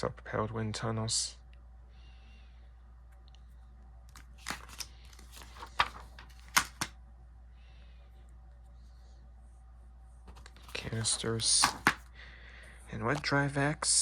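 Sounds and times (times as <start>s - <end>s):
low room hum: 0.0s - 14.0s
book pages rustling and turning: 4.1s - 7.0s, 10.2s - 12.1s.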